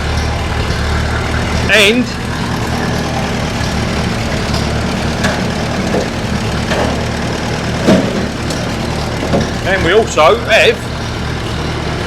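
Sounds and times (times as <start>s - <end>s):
tractor engine idling: 0.0s - 12.0s.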